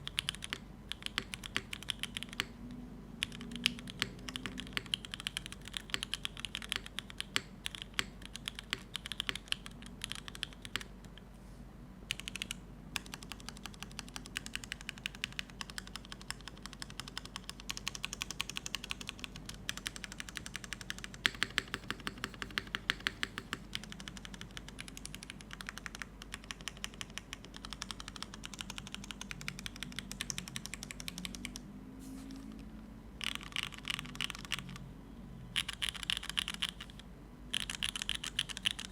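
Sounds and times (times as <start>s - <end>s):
mechanical keyboard key clacks: 37.5s - 38.9s.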